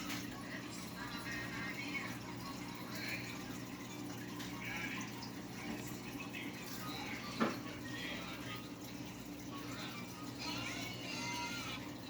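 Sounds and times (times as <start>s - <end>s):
water trickling and gurgling: 0.0s - 12.0s.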